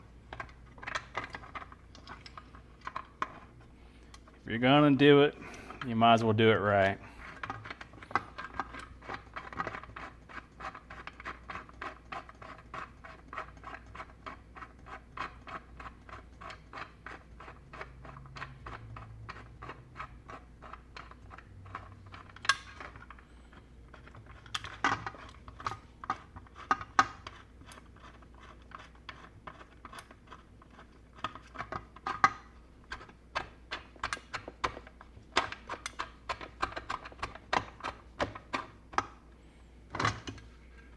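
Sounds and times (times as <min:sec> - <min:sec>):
hand tools clicking on metal parts: 0:20.7 - 0:23.1, 0:23.9 - 0:39.1.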